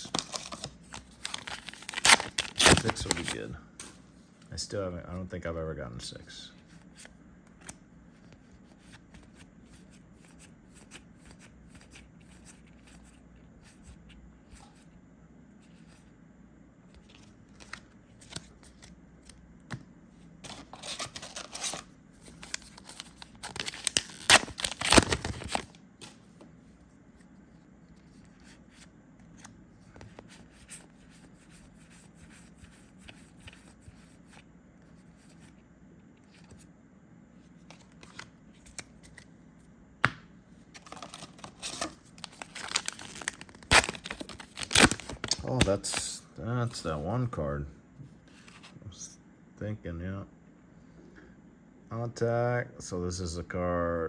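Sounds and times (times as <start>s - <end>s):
foil wrapper crinkling and tearing: 0.0s - 3.5s, 20.5s - 25.8s, 40.8s - 46.2s
trading cards flipped through: 16.9s - 19.8s, 20.4s - 26.2s, 37.6s - 39.3s.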